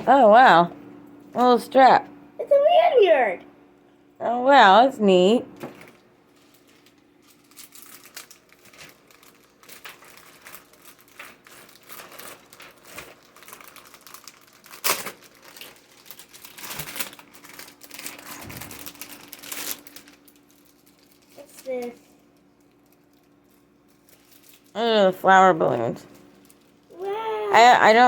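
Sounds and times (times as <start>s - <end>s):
plastic packaging crinkling: 5.7s - 24.8s, 25.8s - 27.7s.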